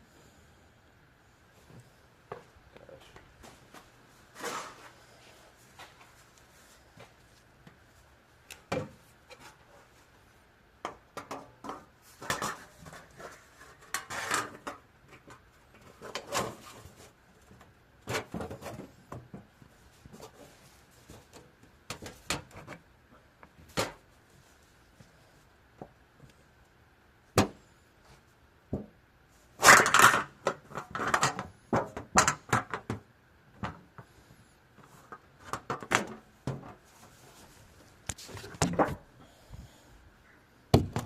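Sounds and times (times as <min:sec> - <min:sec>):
rustling of objects handled: 0:01.6 - 0:26.5, 0:34.8 - 0:39.2.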